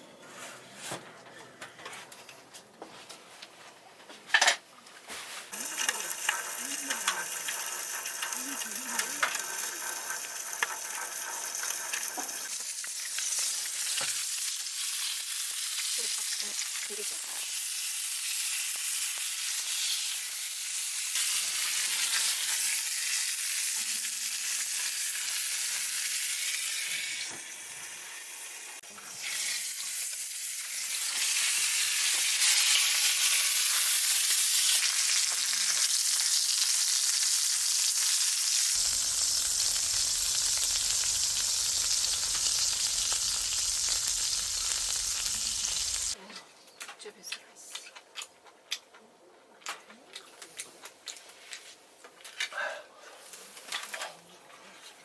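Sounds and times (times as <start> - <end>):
meat sizzling in a pan: 5.5 - 46.2.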